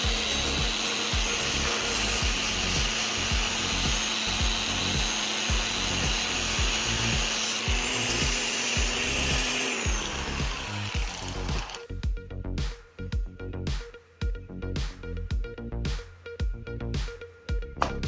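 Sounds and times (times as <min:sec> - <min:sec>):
angle grinder whining: 0:00.0 - 0:12.0
background music with low beat: 0:00.0 - 0:18.0.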